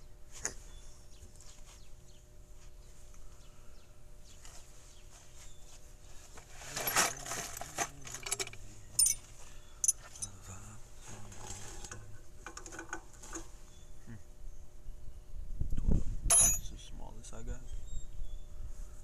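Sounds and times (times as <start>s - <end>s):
metal hand tools clinking: 6.8s - 10.3s, 16.3s - 16.7s.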